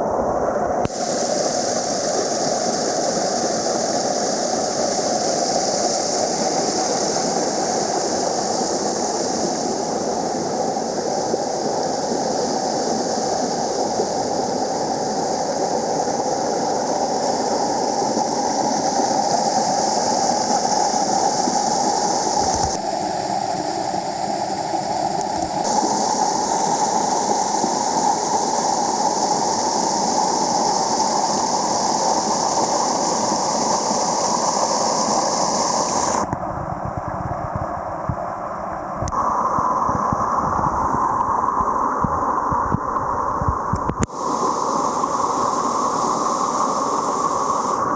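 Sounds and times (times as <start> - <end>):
waterfall rushing: 25.3 - 36.3.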